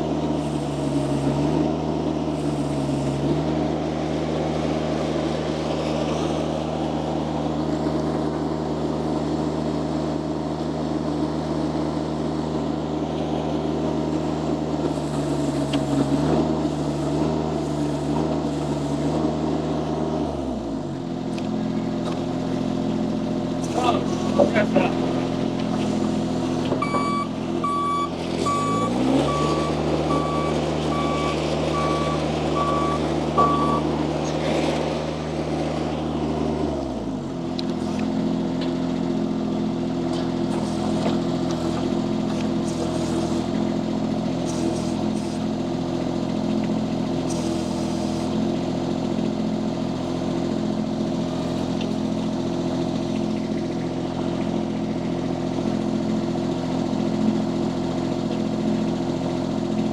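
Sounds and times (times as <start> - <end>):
small diesel engine running: 0.0 - 59.9
reverse alarm beeping: 26.8 - 33.9.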